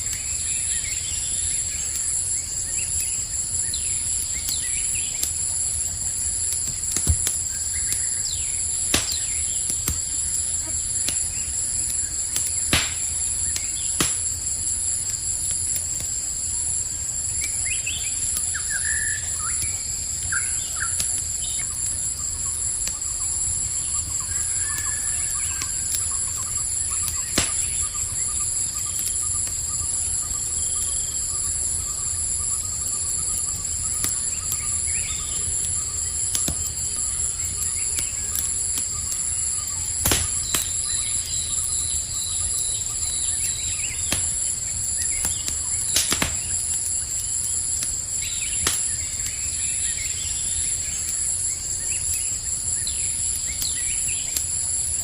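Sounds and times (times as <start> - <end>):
campfire hissing and crackling: 0.0 - 55.0
crickets chirring: 0.0 - 55.0
faint bird chirps: 17.3 - 47.4.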